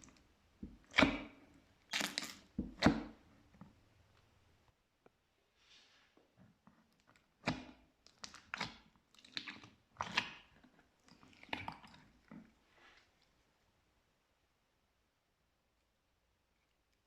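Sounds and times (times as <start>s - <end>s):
slime squishing by hand: 0.0s - 4.2s, 6.8s - 13.2s.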